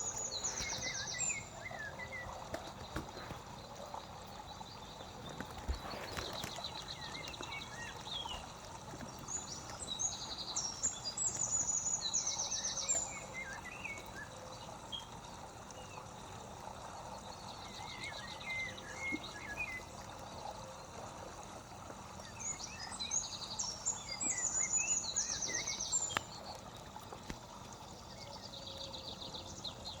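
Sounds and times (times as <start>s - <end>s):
songbird trilling: 0.0s - 3.4s
running water: 0.0s - 30.0s.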